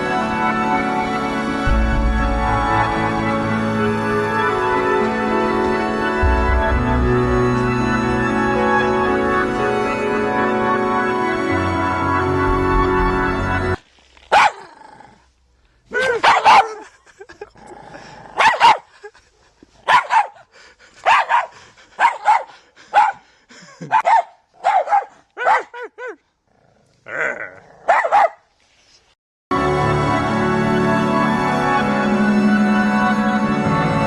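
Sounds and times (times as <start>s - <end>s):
dog barking: 14.3s - 14.7s, 16.0s - 16.8s, 18.4s - 18.9s, 19.8s - 20.4s, 21.0s - 23.2s, 23.9s - 25.9s, 27.8s - 28.5s.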